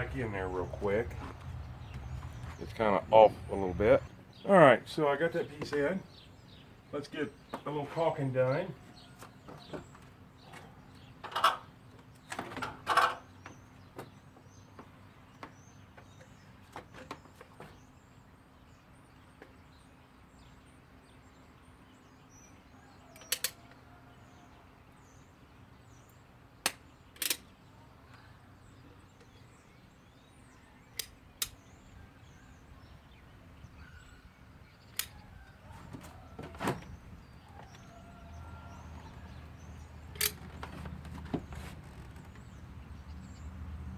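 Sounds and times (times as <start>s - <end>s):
faint birds chirping: 0.0s - 43.9s
caulking gun clicks and knocks: 40.1s - 42.1s.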